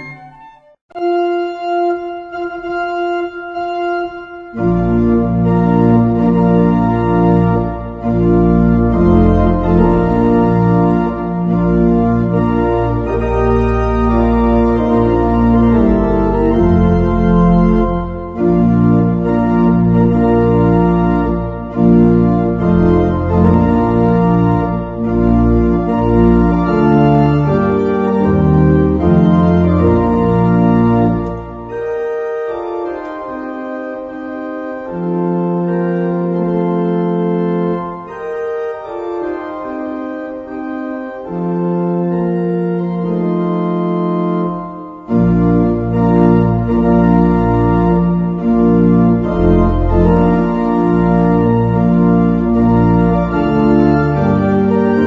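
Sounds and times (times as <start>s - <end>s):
organ playing slow chords: 0.0s - 55.0s.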